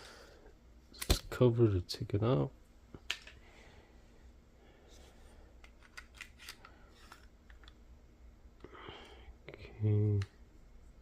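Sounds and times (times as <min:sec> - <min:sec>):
small parts clicking and scraping: 0:05.6 - 0:07.8.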